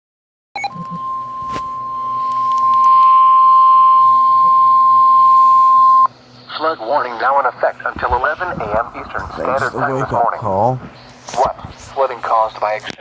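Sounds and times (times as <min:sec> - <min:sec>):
steady high warning tone: 0:00.6 - 0:12.8
faint radio static: 0:03.8 - 0:13.0.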